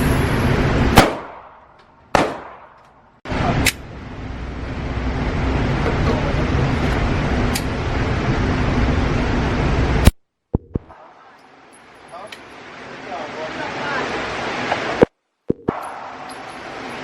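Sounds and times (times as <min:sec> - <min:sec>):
steady low background noise: 0:00.0 - 0:17.0
gunshots: 0:00.9 - 0:02.8.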